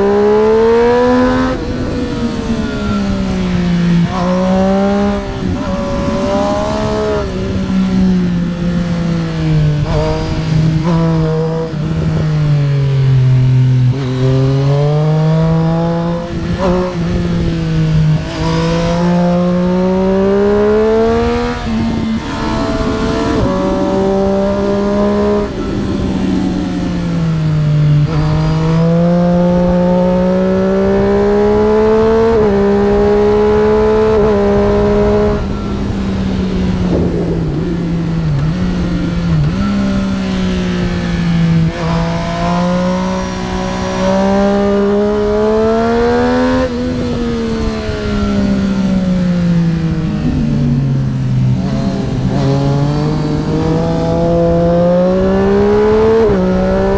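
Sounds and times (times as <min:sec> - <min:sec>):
motorcycle engine revving: 0:00.0 - 0:56.9
wind rushing: 0:20.6 - 0:29.0, 0:32.4 - 0:42.3.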